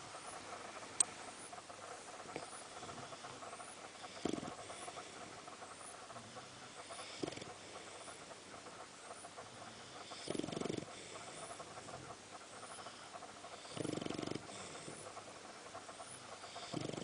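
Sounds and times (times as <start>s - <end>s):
dog breathing quietly: 0.0s - 17.0s
dog snoring: 2.3s - 5.1s, 6.8s - 8.2s, 9.7s - 11.6s, 12.6s - 15.2s, 16.4s - 17.0s.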